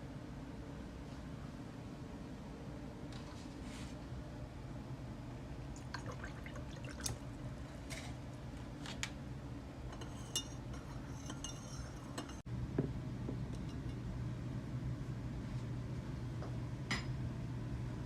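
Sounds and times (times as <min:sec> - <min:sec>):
steady low hum: 0:00.0 - 0:18.0
liquid pouring: 0:05.8 - 0:07.2
glassware clinking: 0:09.9 - 0:12.4.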